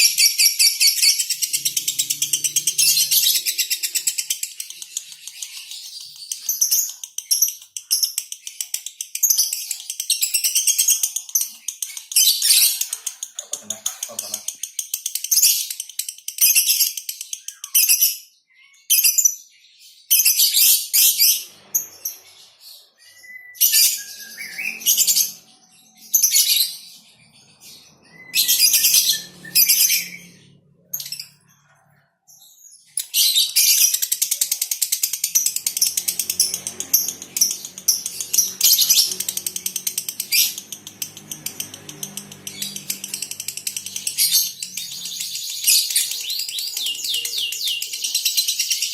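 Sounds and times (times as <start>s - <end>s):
lovebirds chattering: 0.0s - 15.9s, 32.9s - 48.9s.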